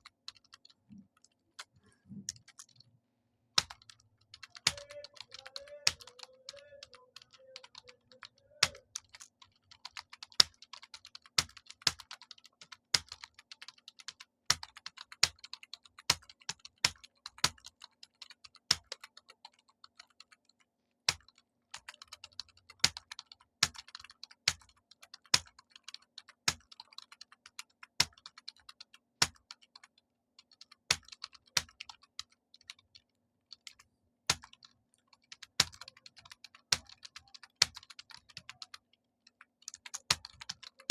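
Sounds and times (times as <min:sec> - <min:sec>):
keyboard typing clicks: 0:03.6 - 0:20.5, 0:21.1 - 0:40.9.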